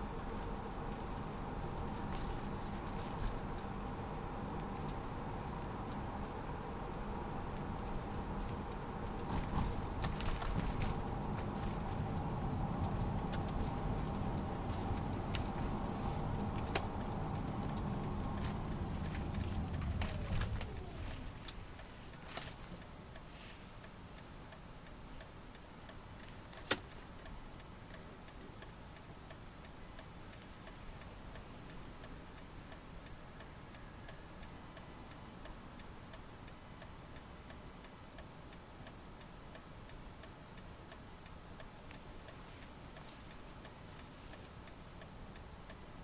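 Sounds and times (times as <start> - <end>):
rhythmic ticking in car cabin: 0.0 - 22.2, 22.8 - 46.0
low road rumble: 0.0 - 26.4.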